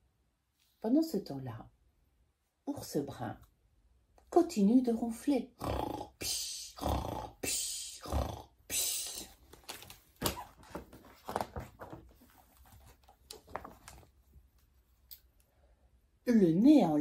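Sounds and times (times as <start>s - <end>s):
imitated snoring: 5.6s - 7.4s, 8.0s - 8.6s.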